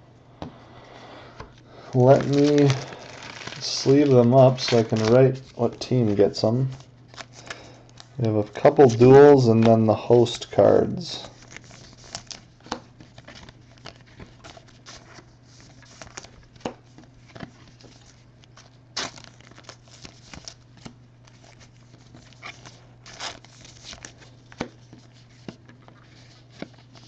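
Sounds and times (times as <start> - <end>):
faint steady hum: 0.0 - 27.0
plastic sleeves rustling: 1.4 - 27.0.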